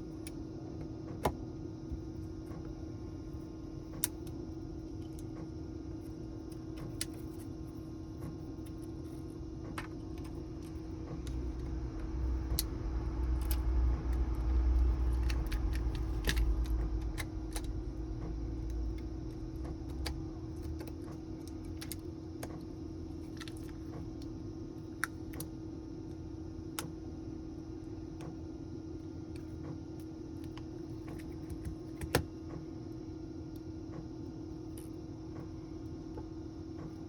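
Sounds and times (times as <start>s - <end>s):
steady hum: 0.0s - 37.0s
low rumble: 10.1s - 21.9s.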